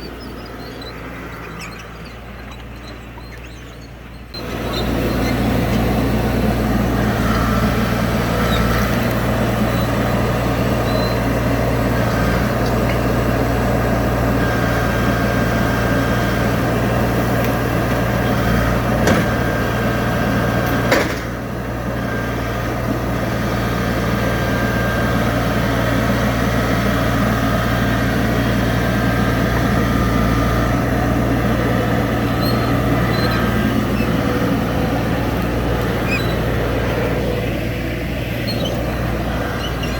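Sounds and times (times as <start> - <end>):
skid steer diesel engine running: 0.0 - 39.9.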